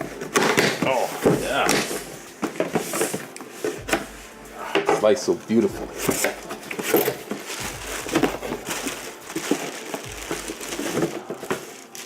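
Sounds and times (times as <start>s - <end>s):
packaging crinkling and rustling: 5.4s - 12.0s.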